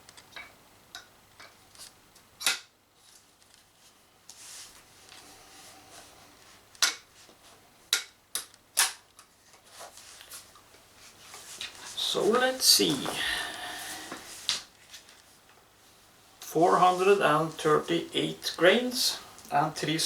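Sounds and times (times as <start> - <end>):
soft rustle: 2.9 - 7.7, 9.3 - 19.5.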